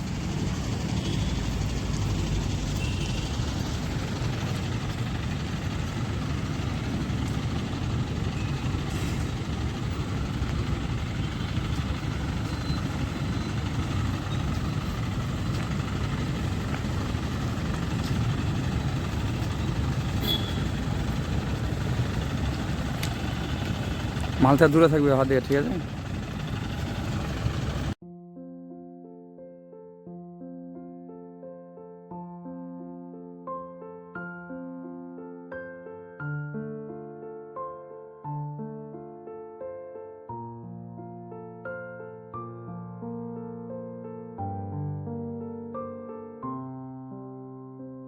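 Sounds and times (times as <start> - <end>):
diesel engine rumbling: 0.0 - 28.0.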